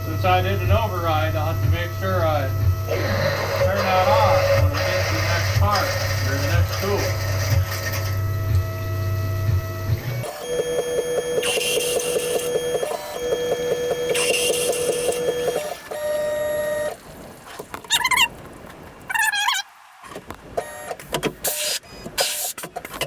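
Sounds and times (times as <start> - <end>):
mill machine humming: 0.0 - 19.2
motor whine with fast ticking: 0.0 - 22.5
short warbling chirps: 17.9 - 18.3.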